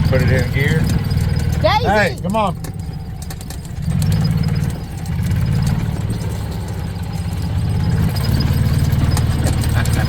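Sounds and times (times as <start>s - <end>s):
vehicle engine low drone: 0.0s - 10.0s.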